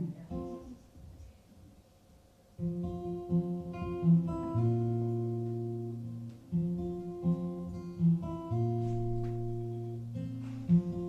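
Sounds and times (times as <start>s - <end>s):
acoustic guitar chords strummed: 2.6s - 11.0s.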